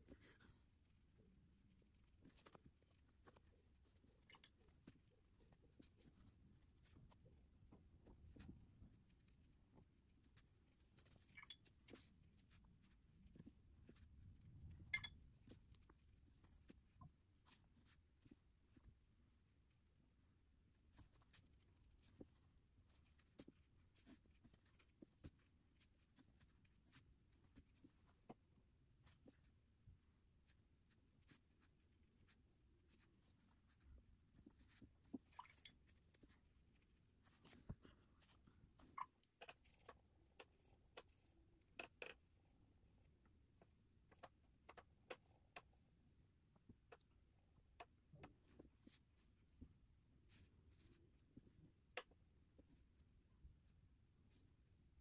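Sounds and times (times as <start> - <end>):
paintbrush strokes on paper: 0.0 - 45.8, 46.6 - 55.0
brush tapping on paper and palette: 37.2 - 42.4.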